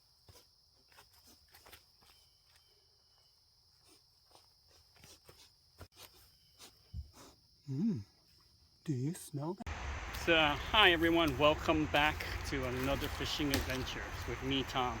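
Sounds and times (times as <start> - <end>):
footsteps: 10.0 - 15.0.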